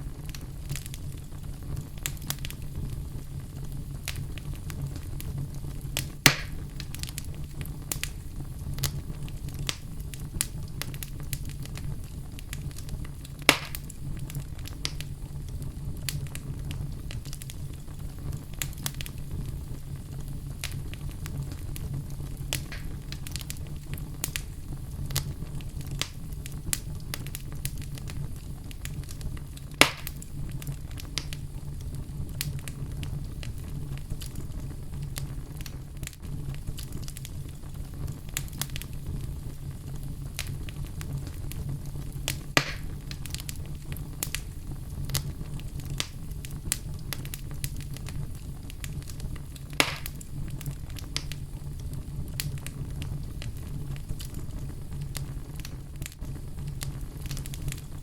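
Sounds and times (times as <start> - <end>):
fire popping: 0.0 - 58.0
wood fire crackling: 0.0 - 58.0.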